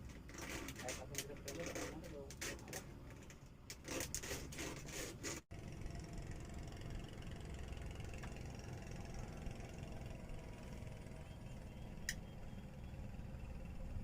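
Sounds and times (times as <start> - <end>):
faint hum: 5.6 - 14.0.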